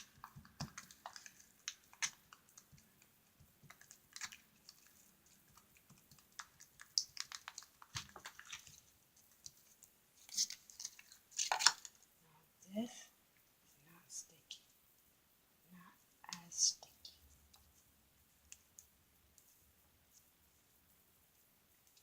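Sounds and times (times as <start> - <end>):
slime squishing with wet clicks: 0.0 - 12.0
slime squelching: 0.0 - 12.1.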